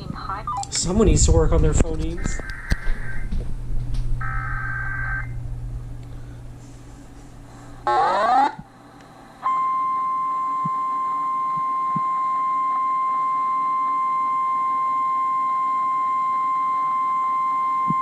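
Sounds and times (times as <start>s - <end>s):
steady alarm beep tone: 4.2s - 5.4s, 9.4s - 18.0s.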